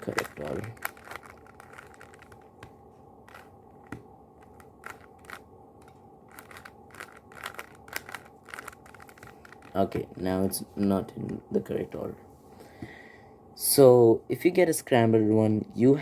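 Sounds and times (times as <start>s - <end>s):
puzzle cube clicking: 0.0s - 10.1s.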